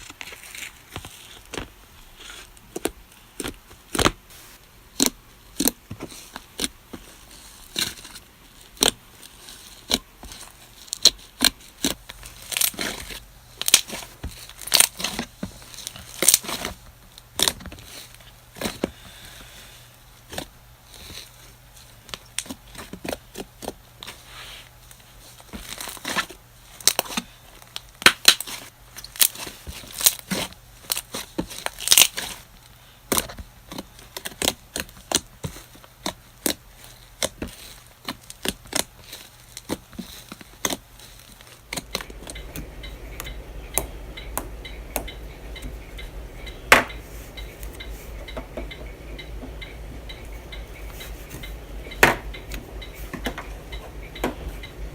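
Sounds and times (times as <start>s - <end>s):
low hum: 41.7s - 54.9s.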